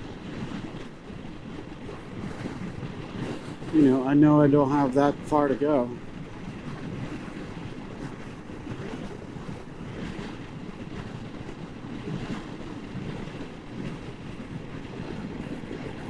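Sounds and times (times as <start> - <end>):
wind rush on microphone: 0.0 - 16.0.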